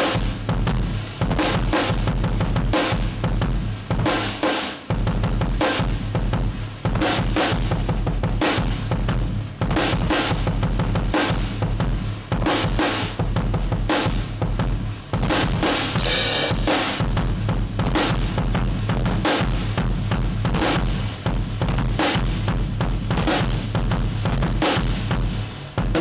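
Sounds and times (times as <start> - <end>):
cymbals: 0.0 - 22.6, 23.3 - 26.0
bass drum: 0.0 - 26.0
snare drum strokes: 15.3 - 17.2.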